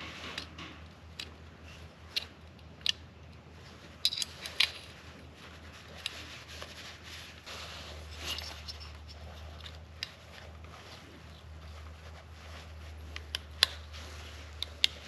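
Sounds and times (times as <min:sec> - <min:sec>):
metal parts clicking and tapping: 0:00.0 - 0:01.5, 0:02.1 - 0:05.1, 0:08.2 - 0:10.4, 0:13.2 - 0:15.0.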